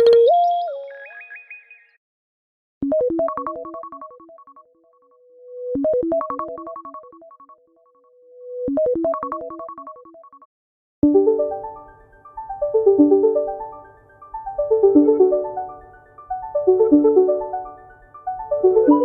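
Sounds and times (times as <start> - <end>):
phone ringtone melody: 18.4 - 19.0.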